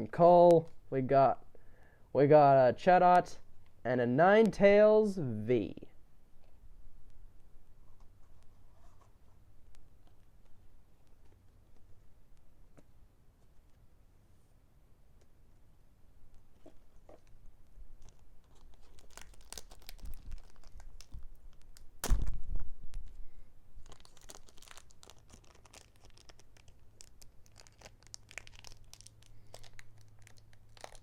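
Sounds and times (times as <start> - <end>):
foil wrapper tearing and crinkling: 18.0 - 22.4, 23.8 - 31.0.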